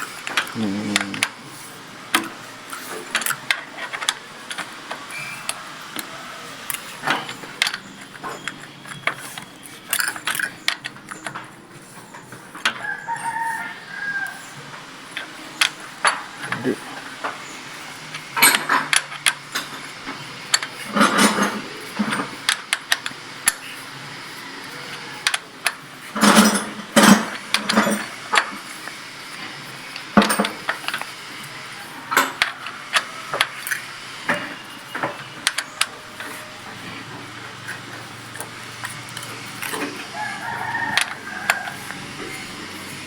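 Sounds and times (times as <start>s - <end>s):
metal tools clicking on engine: 2.1s - 13.6s, 15.1s - 43.0s
rooster crowing: 5.0s - 7.4s, 12.7s - 14.6s, 24.2s - 25.3s, 31.7s - 33.4s, 39.7s - 43.0s.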